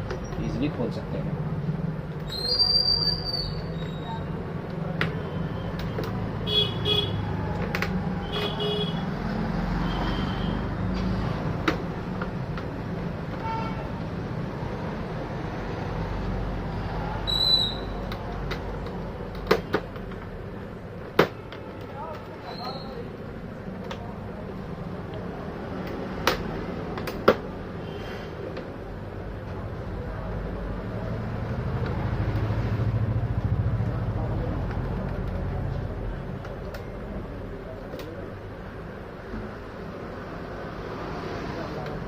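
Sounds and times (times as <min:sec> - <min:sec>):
road traffic hum: 0:00.0 - 0:42.0
plastic clicks and knocks: 0:18.1 - 0:20.3.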